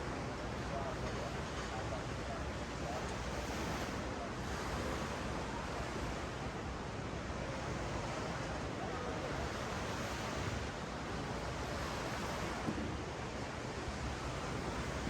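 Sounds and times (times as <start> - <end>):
ocean surf on sandy beach: 0.0 - 15.0.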